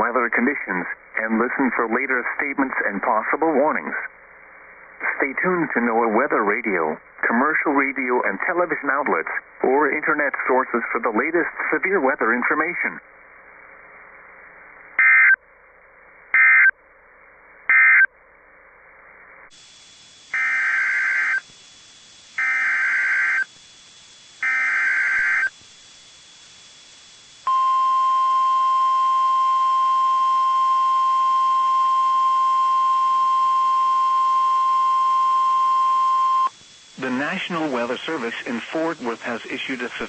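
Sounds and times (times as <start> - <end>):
steady warning alarm tone: 20.2 - 23.6, 24.3 - 25.6, 27.4 - 40.0
digital data bursts: 20.3 - 21.5, 22.4 - 23.5, 24.4 - 25.6, 32.3 - 40.0.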